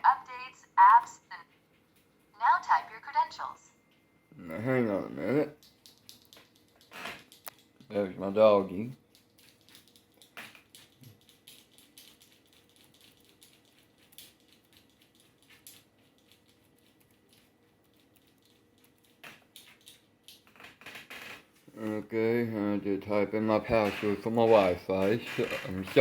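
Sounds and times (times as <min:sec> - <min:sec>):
laptop keyboard clicks: 0:05.6 - 0:07.7.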